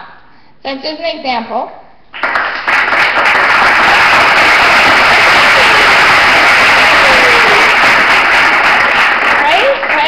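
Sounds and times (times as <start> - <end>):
crowd applause: 2.2 - 10.0.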